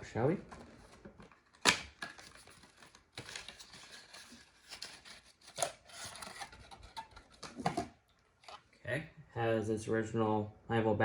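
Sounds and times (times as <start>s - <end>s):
packaging rustling and crinkling: 0.5s - 7.9s.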